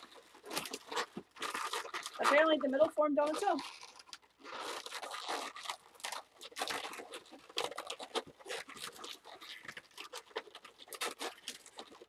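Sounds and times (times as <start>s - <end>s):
balloons squeaking and rubbing: 0.0s - 12.0s.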